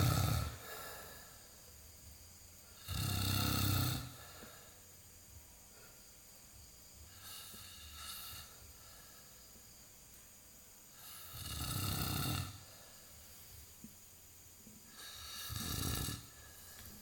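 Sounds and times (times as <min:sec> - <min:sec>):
person snoring loudly: 0:00.0 - 0:01.4, 0:02.8 - 0:04.5, 0:07.2 - 0:08.6, 0:10.9 - 0:12.9, 0:14.9 - 0:16.8.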